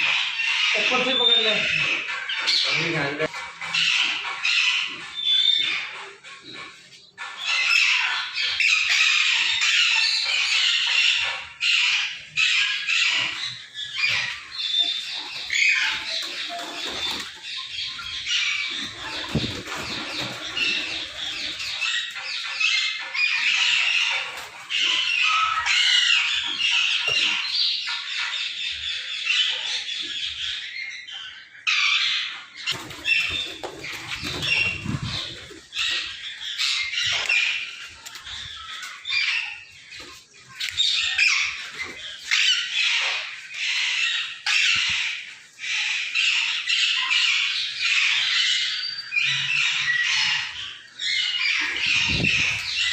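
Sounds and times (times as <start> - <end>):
parrots squawking and chattering: 0.0 - 52.9
wings flapping: 14.1 - 17.4, 18.6 - 22.2, 32.7 - 36.0.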